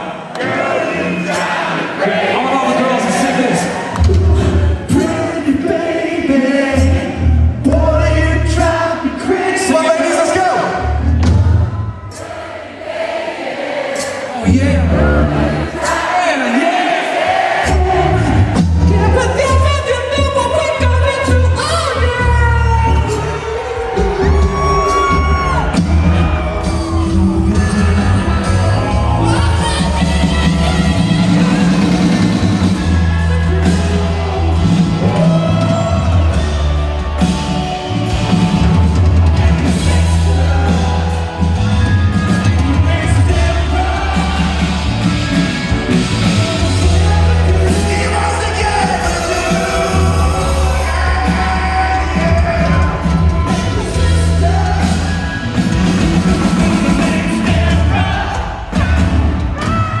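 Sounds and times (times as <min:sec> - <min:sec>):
live rock band playing: 0:10.3 - 0:12.5, 0:17.3 - 1:00.0
deep bass line: 0:17.7 - 0:58.2
person singing: 0:22.3 - 0:32.2, 0:46.2 - 0:55.2.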